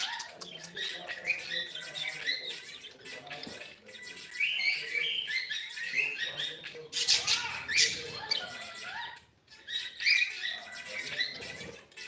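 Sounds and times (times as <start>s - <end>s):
cockatiel chirping: 0.0s - 12.0s
cockatiel screeching: 7.0s - 11.6s.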